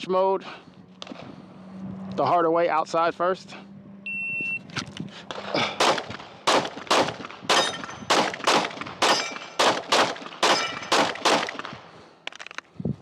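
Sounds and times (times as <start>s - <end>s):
pistol shots: 5.3s - 11.8s
steel plate ringing: 7.5s - 8.1s, 9.0s - 9.6s, 10.5s - 11.0s.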